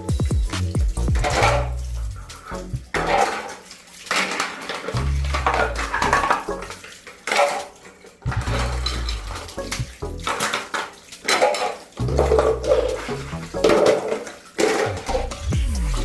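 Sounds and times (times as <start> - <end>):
music with deep bass: 0.0 - 3.2, 5.0 - 6.7, 8.3 - 10.3, 12.0 - 13.8, 15.0 - 16.0
hard objects clattering: 0.0 - 15.6
water sounds: 0.0 - 16.0.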